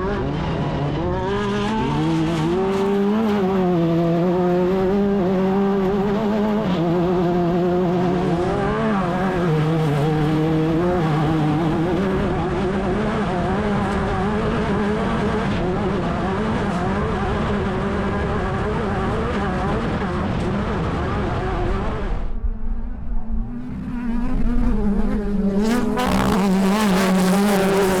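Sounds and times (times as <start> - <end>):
race car engine revving: 0.0 - 22.4, 23.4 - 28.0.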